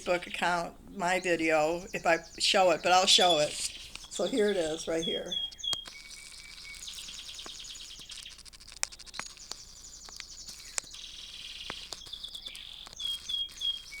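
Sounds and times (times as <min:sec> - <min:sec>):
canary trilling and chirping: 0:00.0 - 0:14.0
sharp clicks: 0:02.4 - 0:14.0.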